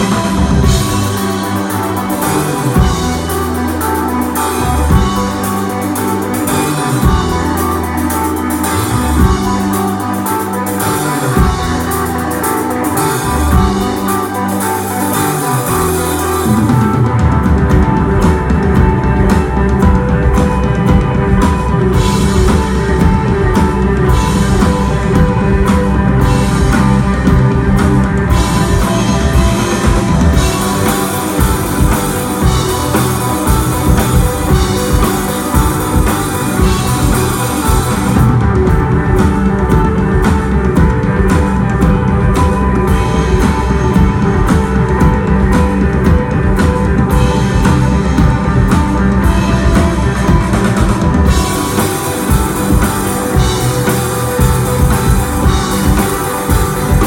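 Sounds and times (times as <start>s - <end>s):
drum and cymbal hits: 0.0s - 57.0s
rock band playing live: 0.0s - 57.0s.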